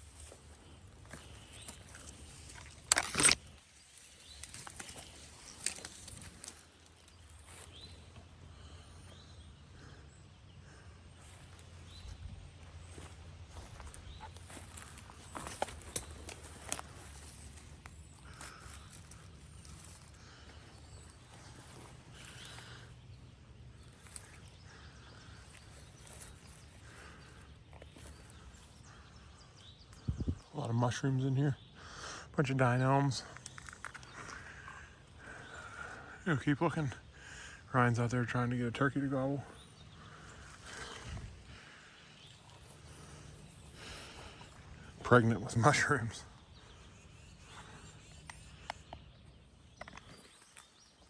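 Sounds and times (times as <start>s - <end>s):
footsteps in dry leaves: 0.0s - 7.9s, 11.4s - 22.8s
light clicks and rustles: 1.2s - 7.5s.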